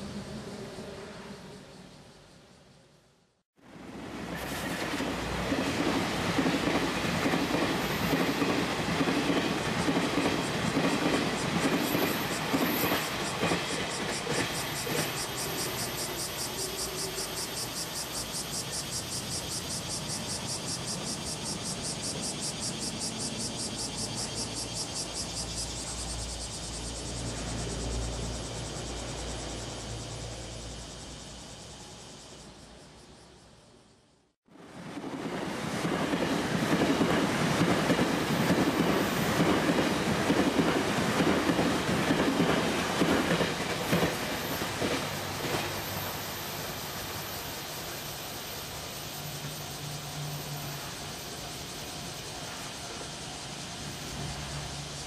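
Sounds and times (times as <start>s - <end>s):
passing train rumble: 0.0s - 2.3s, 3.6s - 33.6s, 34.5s - 55.0s
train wheels clacking over rail joints: 4.4s - 16.4s, 35.0s - 46.0s.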